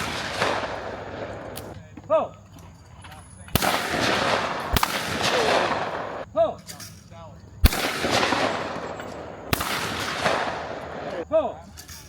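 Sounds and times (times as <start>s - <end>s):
shotgun shots with echo: 0.0s - 1.7s, 3.6s - 6.2s, 7.6s - 11.2s.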